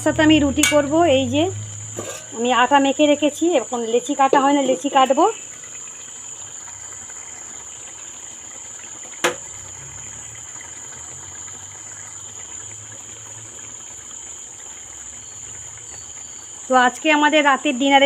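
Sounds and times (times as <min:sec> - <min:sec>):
crickets chirring: 0:00.0 - 0:18.0
sharp knock: 0:09.2 - 0:09.4.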